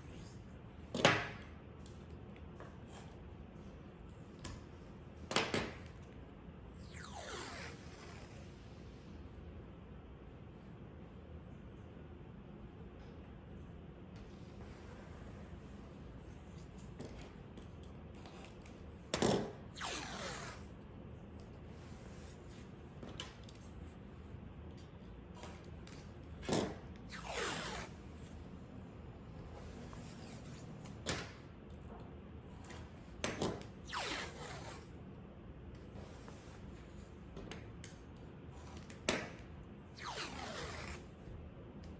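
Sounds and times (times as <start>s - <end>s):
masking tape pulled off roll: 6.8s - 8.6s, 18.2s - 20.8s, 25.4s - 28.3s, 32.6s - 35.0s, 38.6s - 41.2s.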